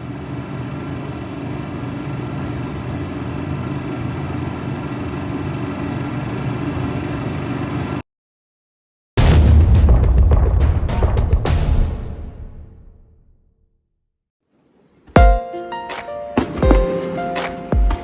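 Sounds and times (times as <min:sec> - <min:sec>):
small engine running: 0:00.0 - 0:08.0.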